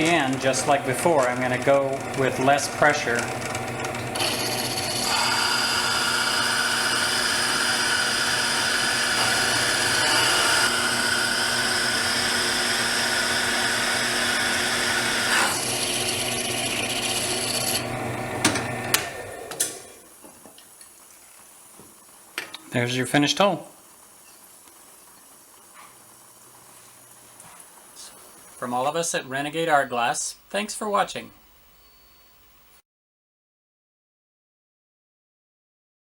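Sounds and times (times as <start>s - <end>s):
drill press grinding glass: 0.0s - 20.1s.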